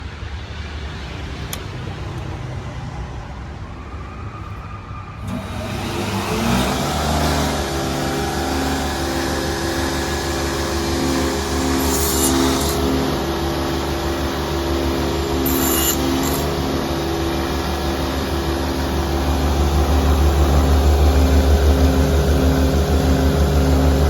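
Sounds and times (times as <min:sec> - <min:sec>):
electric motor running: 0:07.4 - 0:13.6, 0:15.2 - 0:16.8.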